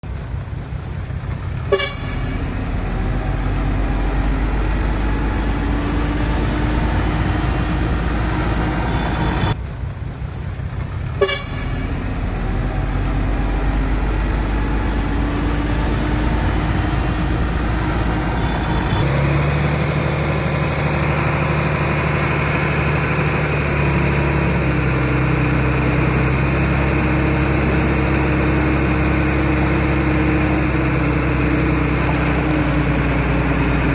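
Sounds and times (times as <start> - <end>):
heavy diesel earthmoving machinery: 0.0 - 33.9.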